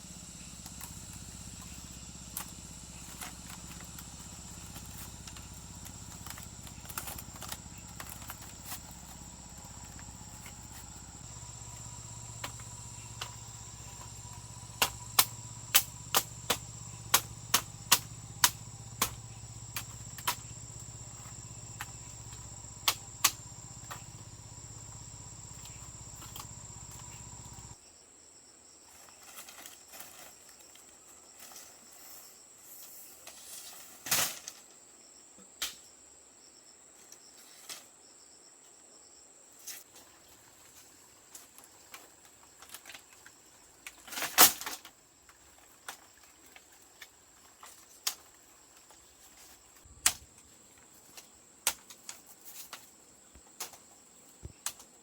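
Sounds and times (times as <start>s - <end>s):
low hum: 0.0s - 27.8s
crickets chirring: 0.0s - 55.0s.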